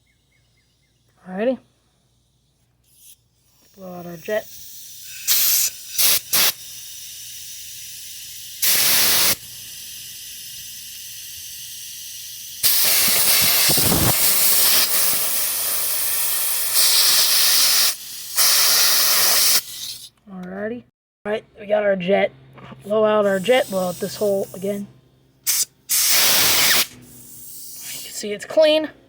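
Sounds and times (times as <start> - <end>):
compressed air blowgun blasts: 1.8 - 20.1, 23.3 - 24.8, 25.4 - 28.2.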